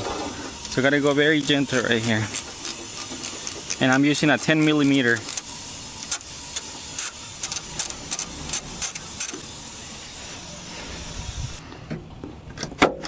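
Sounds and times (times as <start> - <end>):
steady hiss: 0.0 - 11.8
socket wrench ratcheting: 0.6 - 9.5.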